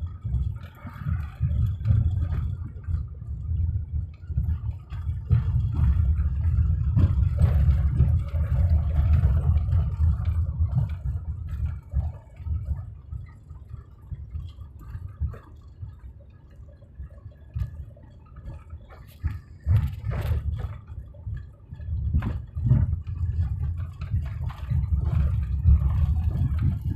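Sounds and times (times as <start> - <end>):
car rumbling on rough track: 0.0 - 26.9
knocks and clatter: 4.4 - 12.6, 18.4 - 26.9.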